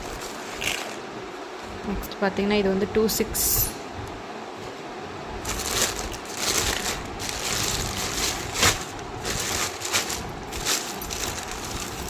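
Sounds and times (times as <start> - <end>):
plastic packets crinkling: 5.4 - 12.0.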